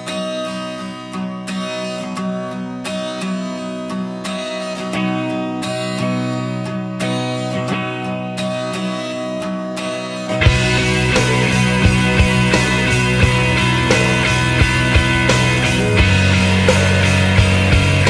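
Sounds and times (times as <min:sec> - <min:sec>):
acoustic guitar strumming chords: 0:00.0 - 0:18.0.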